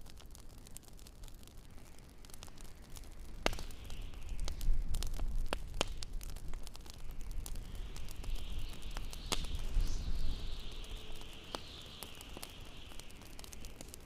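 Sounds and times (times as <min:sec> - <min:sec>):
steady hiss: 0:00.0 - 0:14.0
wood fire crackling: 0:00.0 - 0:14.0
sharp pops: 0:03.4 - 0:14.0.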